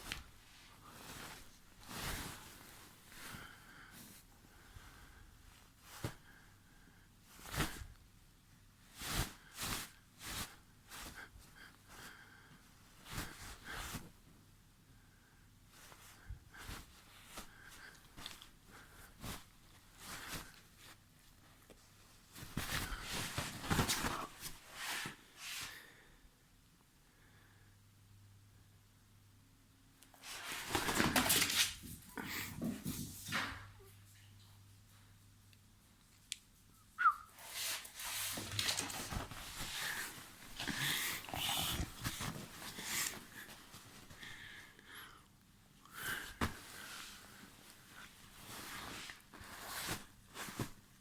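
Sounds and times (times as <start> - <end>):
dog paws scuffling on floor: 15.8 - 25.7, 30.1 - 35.1, 37.4 - 44.3
scuffling movement: 37.4 - 44.5
dog breathing and snuffling: 39.6 - 43.5.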